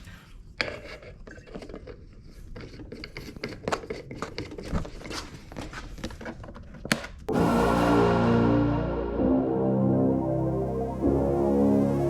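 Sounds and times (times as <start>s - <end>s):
handling clicks knocks and scrapes: 0.6s - 7.2s.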